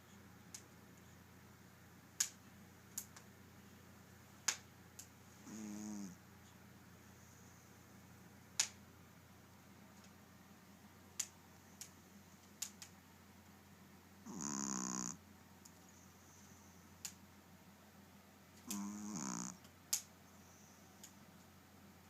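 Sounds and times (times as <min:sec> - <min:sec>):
dog snoring: 0:05.4 - 0:06.2, 0:14.2 - 0:15.2, 0:18.7 - 0:19.6.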